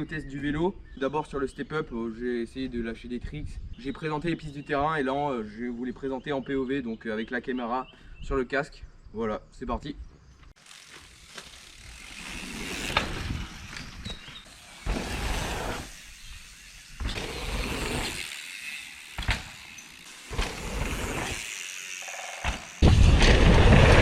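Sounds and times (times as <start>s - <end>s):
bike tyre and wind noise: 10.0s - 24.0s
bike knocking: 17.0s - 22.8s.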